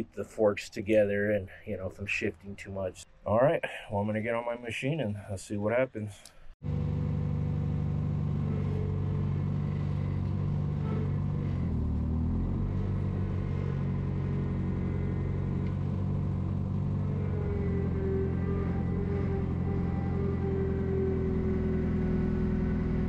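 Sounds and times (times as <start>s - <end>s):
loader engine running: 6.6s - 23.0s.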